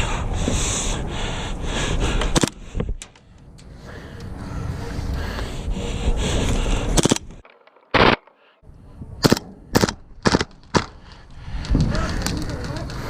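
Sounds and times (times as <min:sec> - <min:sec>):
wind rumble on microphone: 0:00.0 - 0:07.4, 0:08.7 - 0:10.3, 0:11.0 - 0:13.0
airsoft guns firing: 0:07.0 - 0:08.3, 0:09.2 - 0:11.1.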